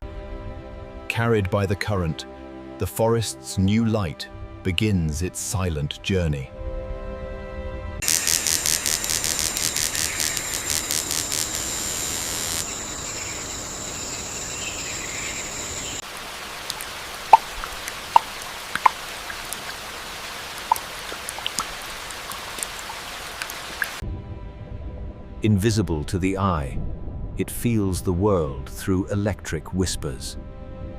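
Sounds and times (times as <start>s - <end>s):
insect trilling buzz: 8.0s - 24.0s
soft steady hiss: 8.0s - 24.0s
water dripping: 12.6s - 24.0s.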